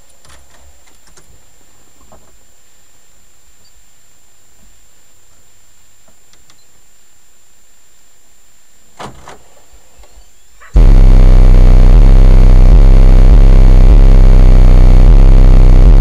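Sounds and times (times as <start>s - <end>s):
bass-heavy music from car speakers: 10.8s - 16.0s.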